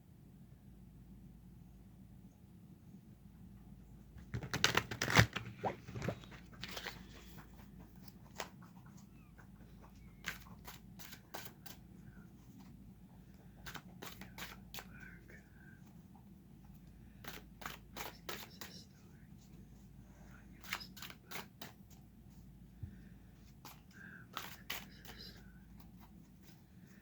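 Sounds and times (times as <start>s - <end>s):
cards being shuffled: 4.2s - 8.9s, 9.8s - 11.9s, 13.5s - 15.0s, 17.2s - 18.8s, 20.6s - 22.0s, 23.5s - 26.7s.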